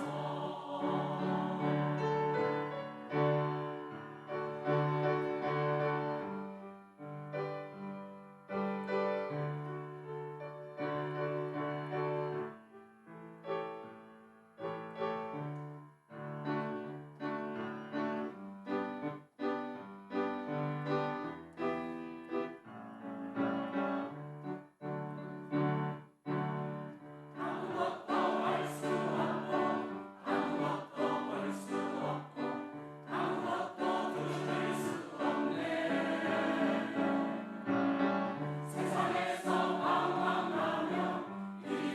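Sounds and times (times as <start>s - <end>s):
choir singing: 0.0s - 6.2s, 27.3s - 41.9s
piano playing: 0.0s - 41.9s.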